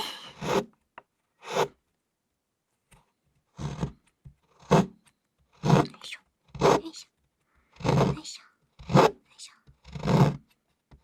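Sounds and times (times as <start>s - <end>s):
chocolate bar being shaved: 7.7s - 8.2s, 9.7s - 10.4s.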